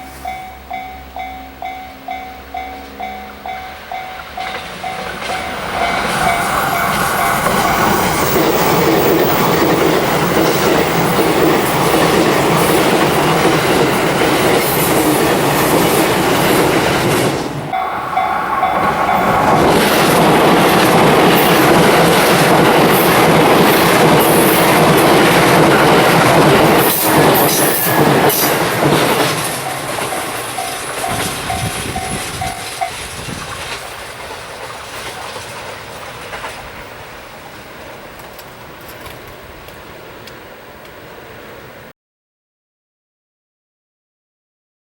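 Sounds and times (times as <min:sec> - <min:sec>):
level-crossing warning bell: 0:00.0 - 0:16.8, 0:17.7 - 0:36.0
electric train passing: 0:00.0 - 0:41.9
train wheels clattering over rail joints: 0:18.6 - 0:37.2, 0:38.1 - 0:39.9.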